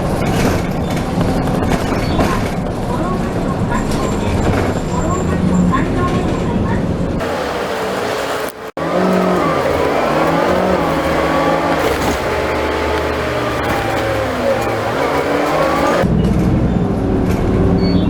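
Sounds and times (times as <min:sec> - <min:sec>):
deep dull rumble: 0:00.0 - 0:07.4
bus engine whine: 0:00.0 - 0:18.0.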